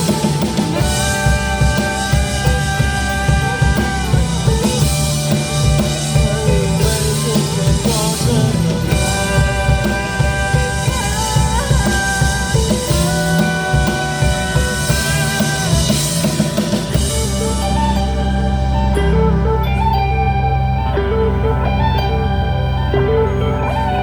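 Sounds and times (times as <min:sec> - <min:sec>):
bending lead guitar notes: 0:00.0 - 0:24.0
live rock band playing: 0:00.0 - 0:24.0.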